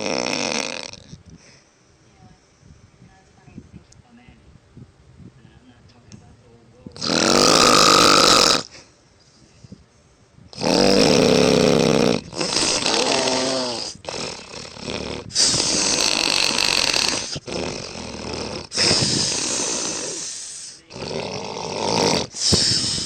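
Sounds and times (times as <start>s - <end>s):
woman snoring loudly: 0.0s - 1.1s, 7.0s - 8.8s, 10.6s - 23.0s.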